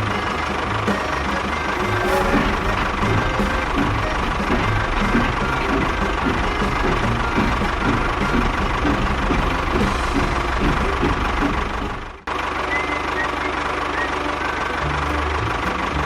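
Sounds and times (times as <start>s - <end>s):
small engine knocking rumble: 0.0s - 16.0s.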